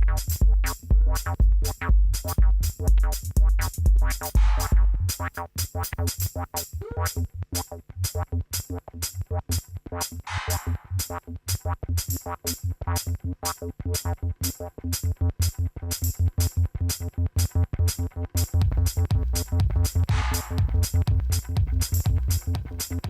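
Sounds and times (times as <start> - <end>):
heavy deep kick drum: 0.0 - 5.2, 18.5 - 23.0
drum-machine beat with hi-hats: 0.0 - 23.0
pulsing synth bass: 0.0 - 23.0.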